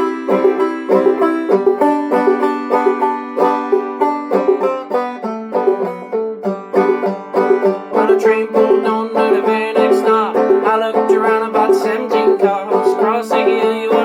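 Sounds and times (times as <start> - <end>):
banjo plucked rapidly: 0.0 - 14.0.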